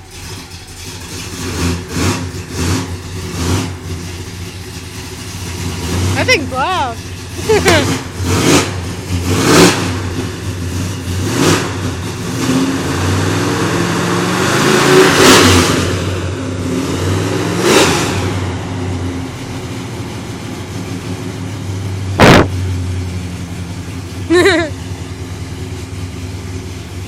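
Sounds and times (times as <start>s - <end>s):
car engine revving and idling: 0.0s - 27.0s
sharp bang: 22.2s - 22.7s.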